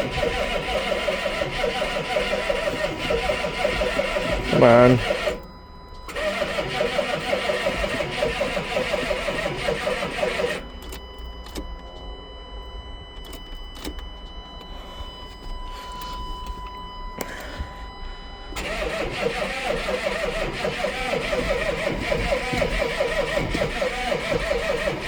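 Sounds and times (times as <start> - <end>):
diesel engine cranking: 0.0 - 5.5, 6.1 - 11.6, 18.6 - 25.0
faint steady tone: 3.8 - 6.1, 10.6 - 18.6.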